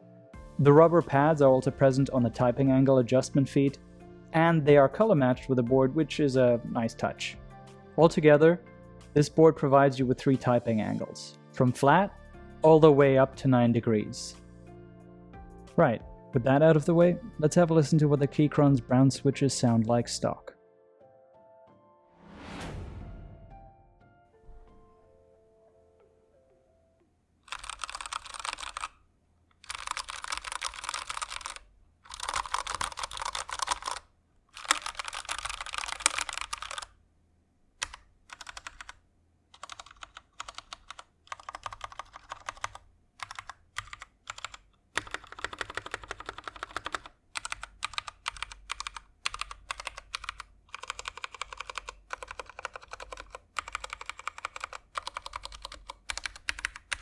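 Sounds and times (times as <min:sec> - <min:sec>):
mechanical keyboard typing: 0:27.5 - 0:29.0, 0:29.6 - 0:36.9, 0:37.8 - 0:39.0, 0:39.6 - 0:57.0.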